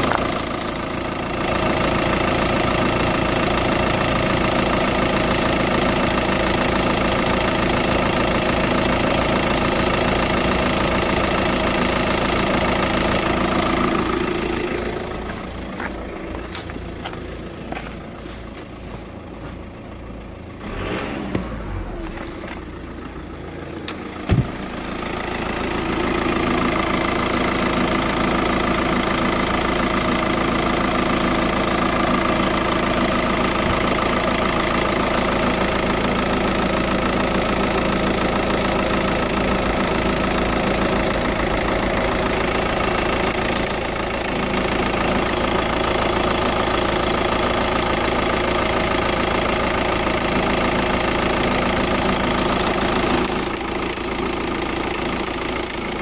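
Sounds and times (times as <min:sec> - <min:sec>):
diesel engine idling with ticking: 0:00.0 - 0:56.0
sharp engine knock: 0:24.3 - 0:24.7.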